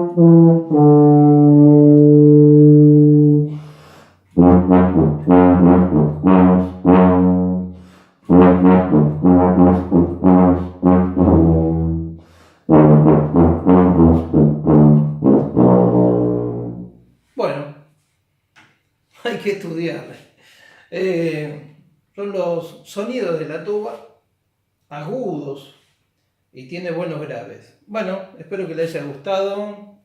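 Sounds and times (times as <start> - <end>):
tuba playing: 0.0 - 17.1.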